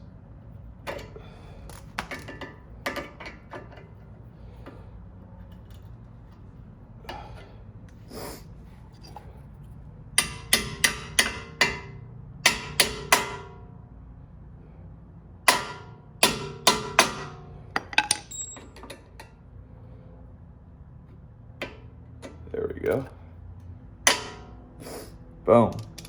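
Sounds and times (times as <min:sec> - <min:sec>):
hammer tapping on metal: 0:10.2 - 0:13.6, 0:15.5 - 0:18.3, 0:24.1 - 0:24.6.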